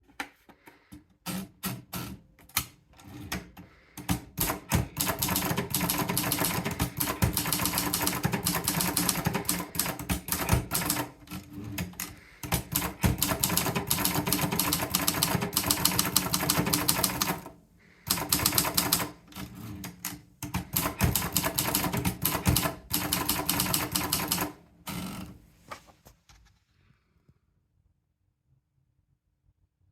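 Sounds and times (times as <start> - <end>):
typewriter keystrokes clattering: 4.0 - 17.5, 18.1 - 25.3.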